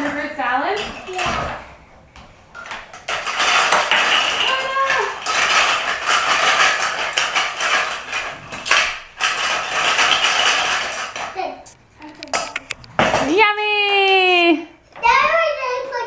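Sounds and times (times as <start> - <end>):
toy pieces clattering in bowl: 0.0 - 1.7, 2.6 - 13.4.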